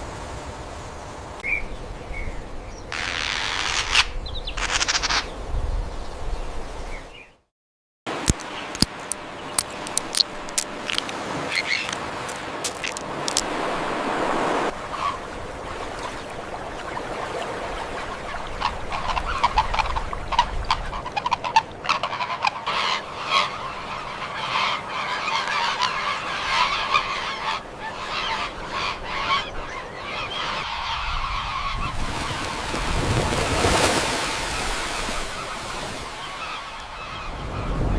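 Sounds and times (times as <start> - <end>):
flock of birds calling: 10.9 - 13.4, 16.9 - 33.0, 34.4 - 37.9.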